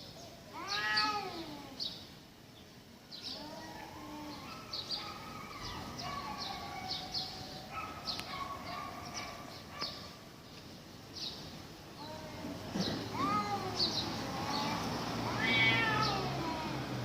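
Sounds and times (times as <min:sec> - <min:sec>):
birds chirping: 0:00.0 - 0:16.7
cats yowling: 0:00.5 - 0:01.7, 0:03.4 - 0:09.3, 0:13.1 - 0:16.8.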